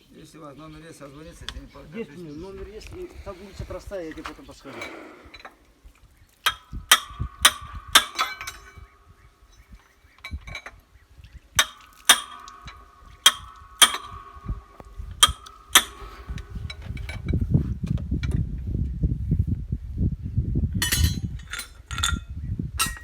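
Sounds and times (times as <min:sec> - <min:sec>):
tool striking steel parts: 0:06.4 - 0:10.8, 0:11.6 - 0:17.3, 0:20.8 - 0:23.0.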